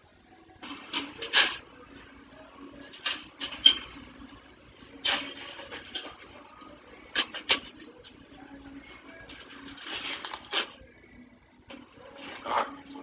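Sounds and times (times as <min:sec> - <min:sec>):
scraping and rubbing: 0:05.0 - 0:10.8.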